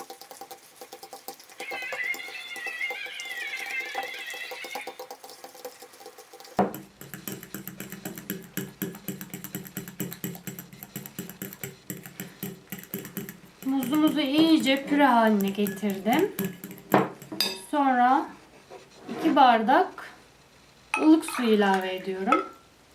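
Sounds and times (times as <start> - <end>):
fork mashing banana in bowl: 0.0 - 19.5
high wavering cry: 1.6 - 5.0.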